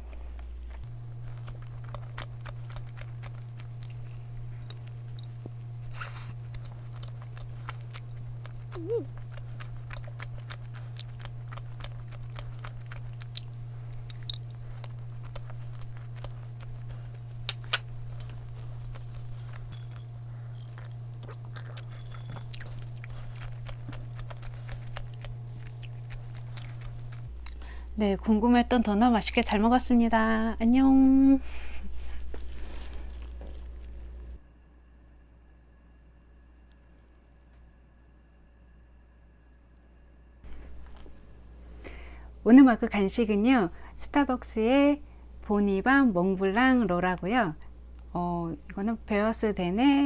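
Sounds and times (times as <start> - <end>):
steady low hum: 0.0 - 50.0
person chewing food: 0.6 - 28.0, 40.5 - 42.1
wet mouth clicks: 0.9 - 27.6.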